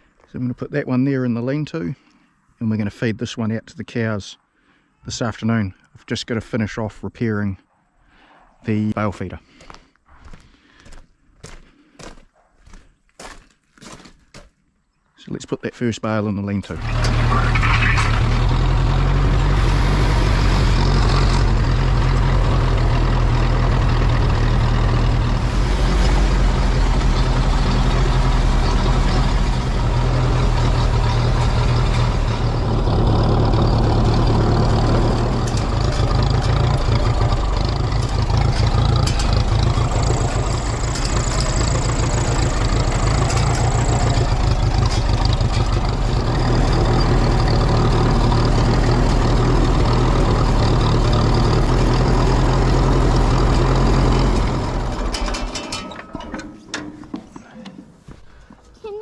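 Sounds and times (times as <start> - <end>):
tractor engine running: 16.7 - 57.4.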